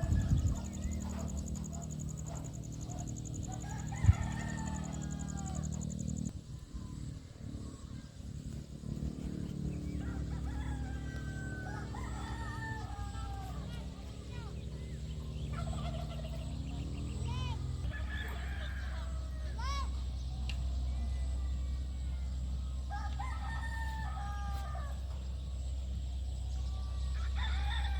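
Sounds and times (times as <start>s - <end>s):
low rumble: 0.0s - 18.1s
birds calling: 0.0s - 27.9s.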